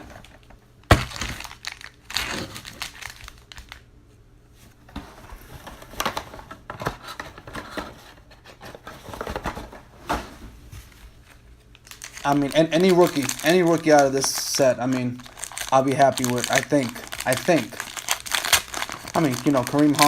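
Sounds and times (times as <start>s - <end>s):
plastic wrapping crinkling and tearing: 0.0s - 3.8s, 11.7s - 20.0s.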